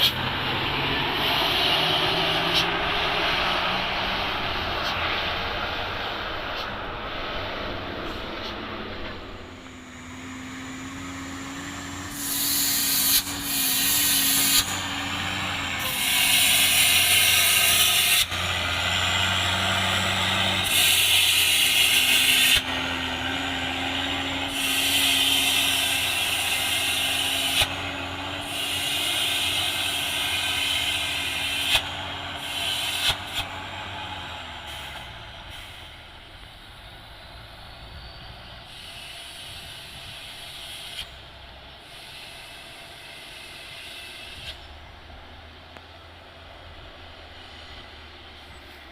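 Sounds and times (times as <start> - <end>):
truck engine running: 0.0 - 48.9
air brakes hissing: 8.0 - 9.9, 11.6 - 18.6, 20.5 - 23.0, 24.3 - 33.7, 34.6 - 45.0, 47.2 - 48.9.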